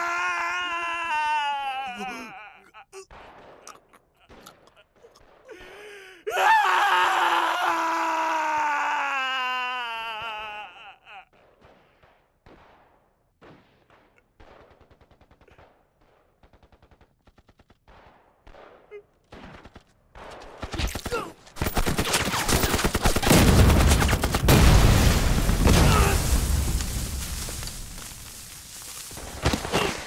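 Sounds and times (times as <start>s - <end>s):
heavy gunfire: 14.4s - 28.0s.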